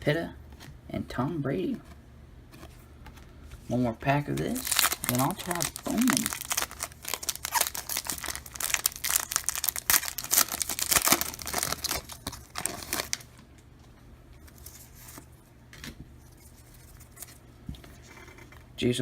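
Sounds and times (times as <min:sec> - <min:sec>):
faint rustling and handling: 0:01.7 - 0:15.5
wrapper tearing and crinkling: 0:04.4 - 0:13.4.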